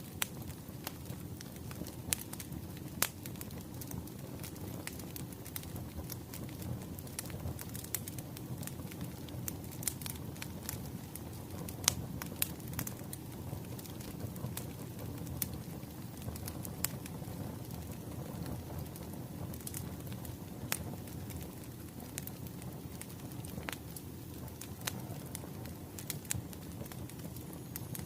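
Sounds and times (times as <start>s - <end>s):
wood fire crackling: 0.0s - 28.0s.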